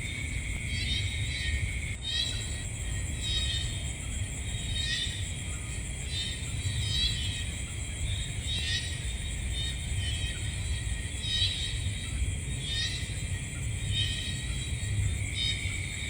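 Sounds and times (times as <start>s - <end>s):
crickets trilling: 0.0s - 16.0s
loud wavering insect call: 0.0s - 16.0s.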